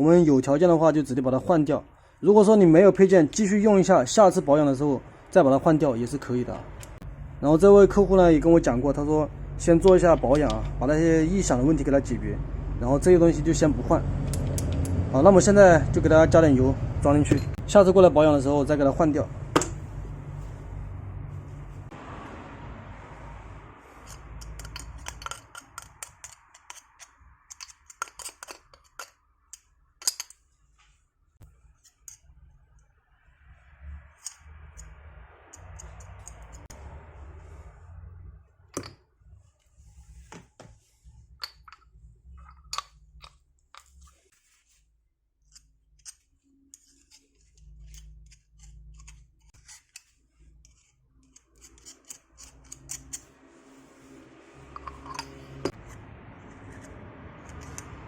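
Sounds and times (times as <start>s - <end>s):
small metal parts clicking: 24.0s - 30.4s, 34.2s - 36.7s, 45.5s - 53.3s
soft rubbing: 39.2s - 41.3s, 43.8s - 45.0s.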